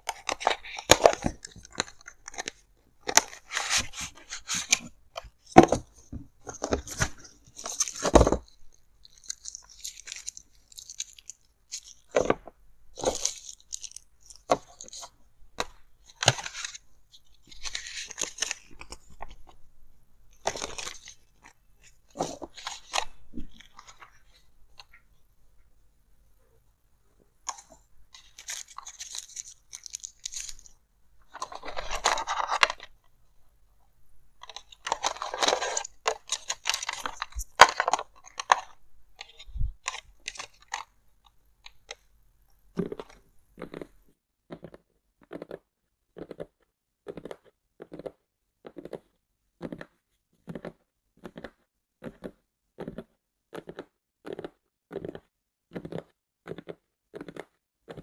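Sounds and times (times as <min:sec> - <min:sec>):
packaging crinkling and rustling: 0:00.0 - 0:19.6, 0:20.4 - 0:25.0, 0:27.5 - 0:33.1, 0:34.3 - 0:40.9.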